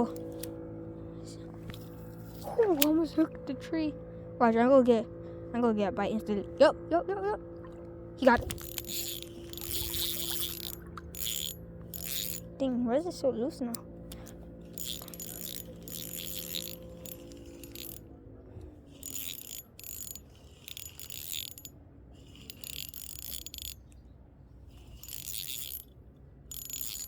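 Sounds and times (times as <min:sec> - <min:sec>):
fishing reel whirring and clicking: 0:00.0 - 0:00.6, 0:01.7 - 0:03.1, 0:08.2 - 0:12.6, 0:13.7 - 0:18.1, 0:18.8 - 0:24.0, 0:24.6 - 0:27.0.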